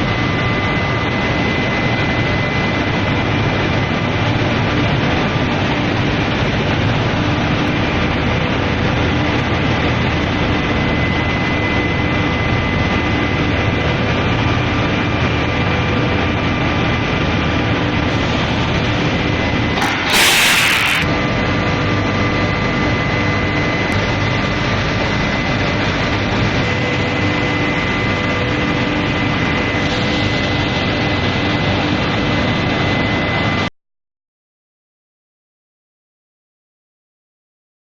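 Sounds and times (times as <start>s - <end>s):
industrial heating machinery running: 0.0s - 21.1s, 21.7s - 33.6s
induction heater roaring: 17.3s - 21.1s
high steady whine: 19.6s - 21.1s.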